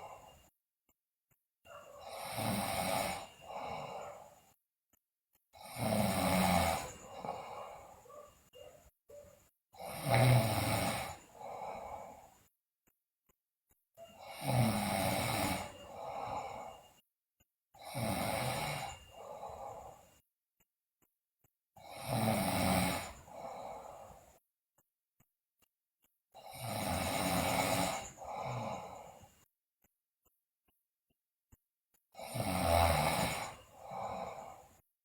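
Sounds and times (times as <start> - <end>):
girl snoring: 1.7 - 4.6, 5.6 - 8.7, 9.8 - 12.5, 14.0 - 17.0, 17.8 - 20.2, 21.8 - 24.4, 26.4 - 29.4, 32.2 - 34.8.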